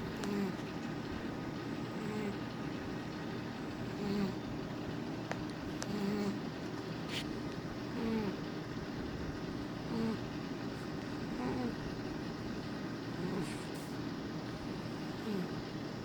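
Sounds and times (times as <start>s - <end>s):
cat snoring: 0.0s - 0.6s, 1.8s - 2.4s, 3.7s - 4.4s, 5.8s - 6.4s, 8.0s - 8.4s, 9.9s - 10.3s, 11.2s - 11.8s, 13.1s - 14.0s, 14.6s - 15.6s.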